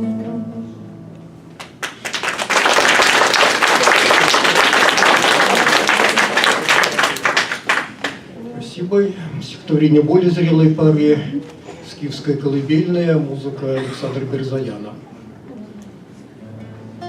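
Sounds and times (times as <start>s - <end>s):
audience applause: 1.6s - 8.2s.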